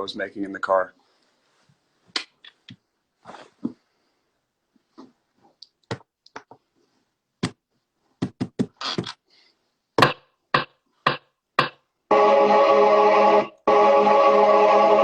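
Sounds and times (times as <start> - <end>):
sharp knocks and taps: 10.0 - 11.8.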